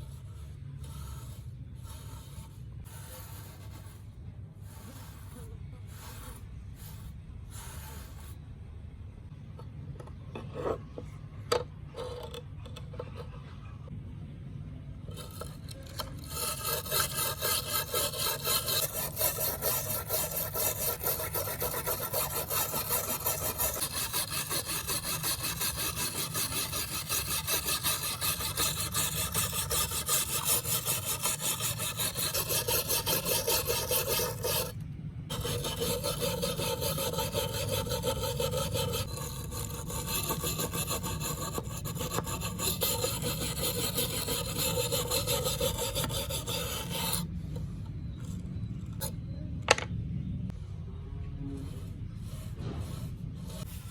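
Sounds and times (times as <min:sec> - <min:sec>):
abrasive scrubbing knife blade: 0:15.2 - 0:47.3.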